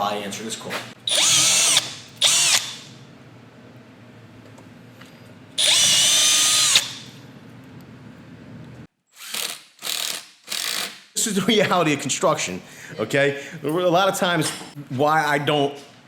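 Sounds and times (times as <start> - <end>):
power drill driving a screw: 1.1 - 2.9, 5.6 - 7.0, 9.2 - 11.0.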